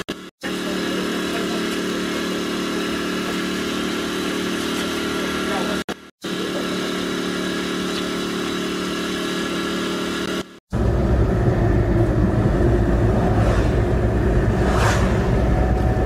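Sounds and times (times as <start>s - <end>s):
engine humming: 0.0s - 16.0s
rough low engine rumble: 0.0s - 16.0s.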